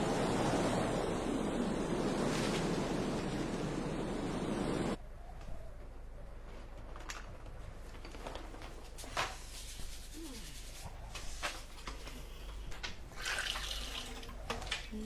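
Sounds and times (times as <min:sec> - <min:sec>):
wind blowing: 0:00.0 - 0:06.5.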